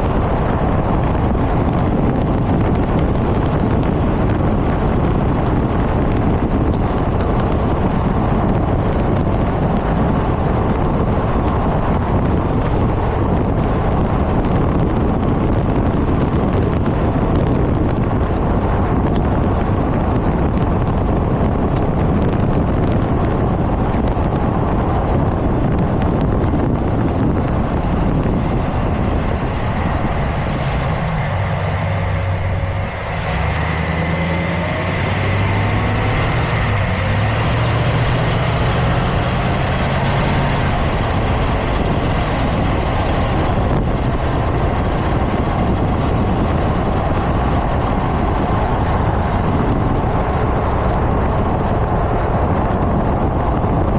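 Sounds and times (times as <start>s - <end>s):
low hum: 0.0s - 53.9s
moving vehicle noise: 0.0s - 53.9s
wind on microphone: 0.0s - 53.9s.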